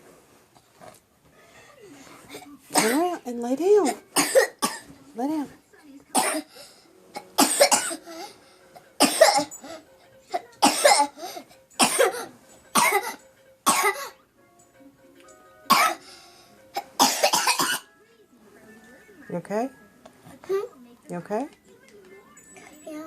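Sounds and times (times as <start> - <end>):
child coughing: 2.3 - 3.2, 3.8 - 4.9, 6.1 - 6.6, 7.2 - 14.2, 15.7 - 16.0, 16.8 - 17.9.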